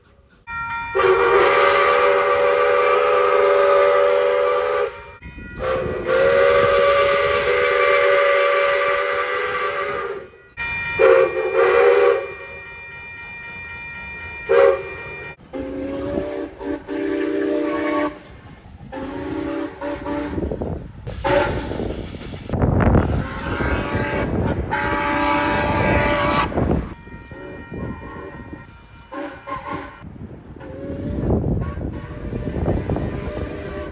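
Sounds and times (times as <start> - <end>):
train whistle blasts: 0.0 - 18.3, 18.9 - 22.0, 23.0 - 33.9
hiss of steam: 20.9 - 22.8.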